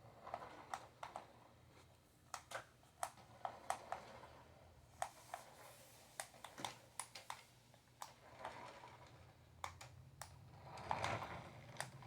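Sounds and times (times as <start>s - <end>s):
plastic toy clicks and taps: 2.4s - 3.9s, 9.6s - 10.4s.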